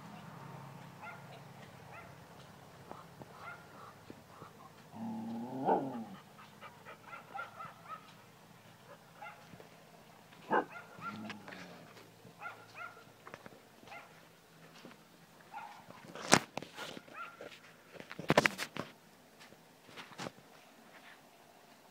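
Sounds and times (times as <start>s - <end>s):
dog barking and yelping: 1.0s - 2.2s, 3.3s - 4.8s, 5.4s - 8.2s, 8.8s - 9.5s, 10.4s - 11.6s, 12.4s - 13.1s, 15.5s - 16.0s, 17.0s - 17.5s
dog high-pitched calls: 5.6s - 8.1s, 10.5s - 11.4s.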